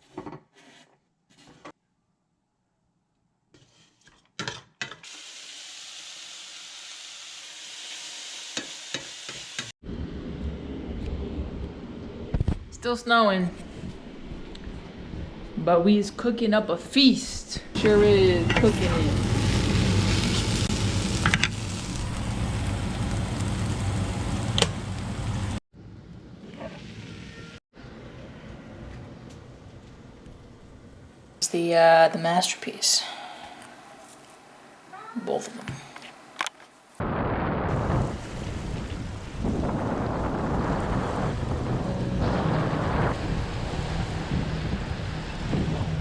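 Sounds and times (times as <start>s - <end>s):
food sizzling in a pan: 5.0s - 9.7s, 18.7s - 25.0s, 38.0s - 41.5s
low rumble: 9.8s - 12.8s, 18.0s - 26.2s, 37.0s - 46.0s.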